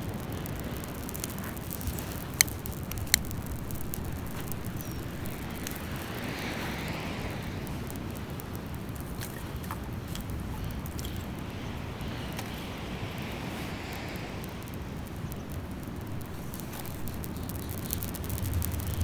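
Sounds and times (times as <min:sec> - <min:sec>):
campfire pops: 0:00.0 - 0:19.0
surf on a beach: 0:00.0 - 0:19.0
wave washing: 0:00.0 - 0:19.0.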